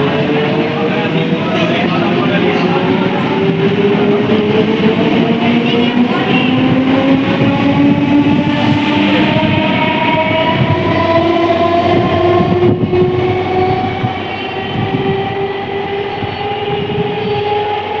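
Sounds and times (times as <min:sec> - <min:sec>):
train running through station: 0:00.0 - 0:18.0
train horn long multi-tone blast: 0:06.2 - 0:18.0.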